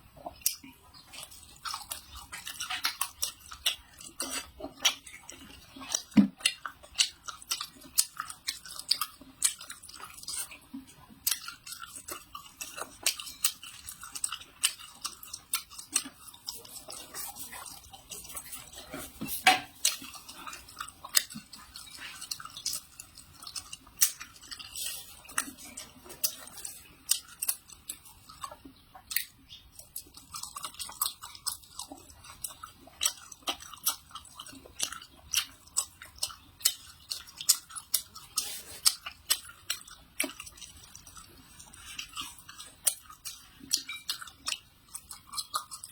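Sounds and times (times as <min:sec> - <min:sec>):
chewing: 0:00.1 - 0:45.9.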